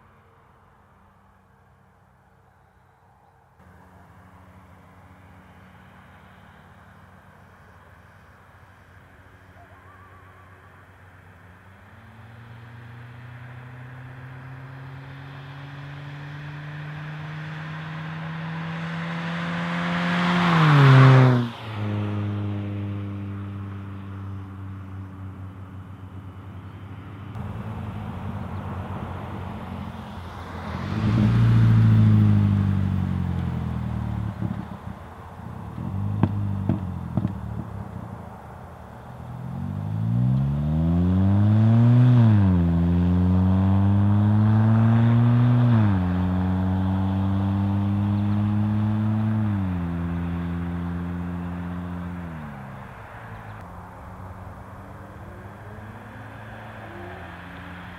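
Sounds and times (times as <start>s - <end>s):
car engine accelerating: 11.6s - 57.9s
exhaust pops and crackles: 33.3s - 38.4s.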